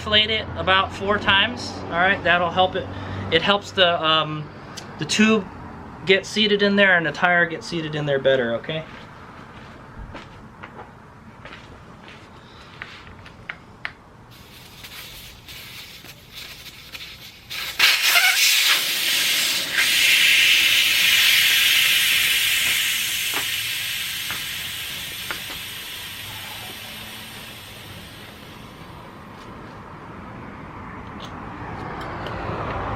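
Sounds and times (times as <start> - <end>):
air hissing from tire valve: 14.3 - 29.2.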